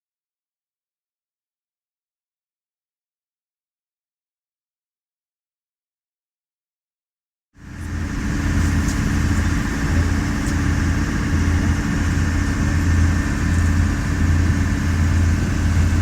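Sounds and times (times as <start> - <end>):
engine humming: 7.6 - 16.0.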